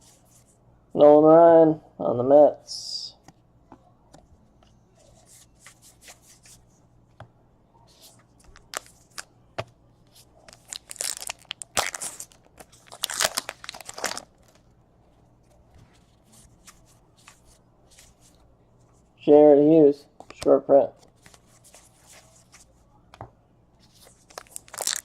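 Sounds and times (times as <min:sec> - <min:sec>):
card pack wrapper tearing and crinkling: 0:08.5 - 0:09.3, 0:10.4 - 0:14.6, 0:24.1 - 0:25.0.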